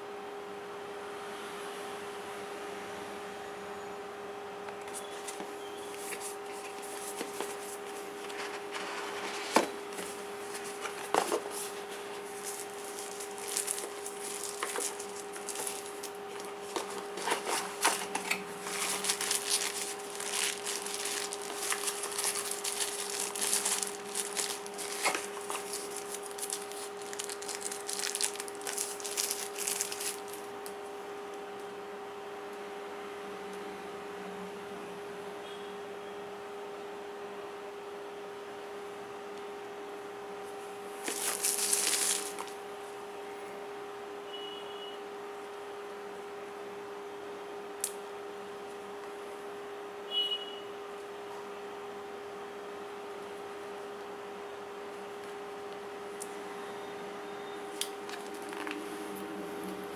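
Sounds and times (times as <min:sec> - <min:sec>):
steady electrical hum: 0:02.0 - 0:59.9
cardboard and plastic packaging crinkling: 0:04.8 - 0:30.8, 0:40.9 - 0:42.6, 0:57.8 - 0:58.9.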